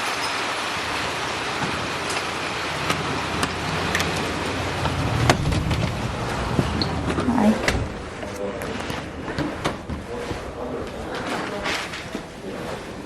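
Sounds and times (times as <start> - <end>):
car engine idling: 0.6 - 9.3.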